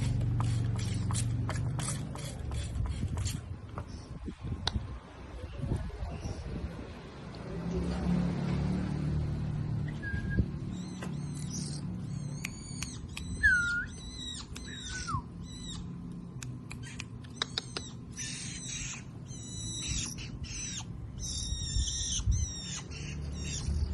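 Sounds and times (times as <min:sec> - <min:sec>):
songbirds chirping: 0:00.2 - 0:23.9
bird whistle: 0:09.9 - 0:15.8.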